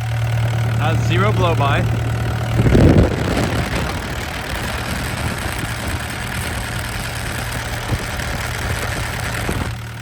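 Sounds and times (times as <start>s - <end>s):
diesel engine idling: 0.0s - 10.0s
loud rush of low noise: 0.3s - 9.4s.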